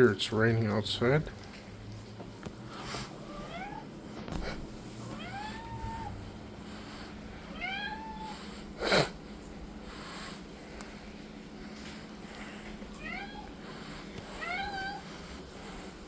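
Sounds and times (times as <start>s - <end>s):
cat meowing: 3.2s - 3.9s, 5.0s - 6.3s, 7.5s - 8.5s, 13.0s - 13.6s, 14.4s - 15.1s.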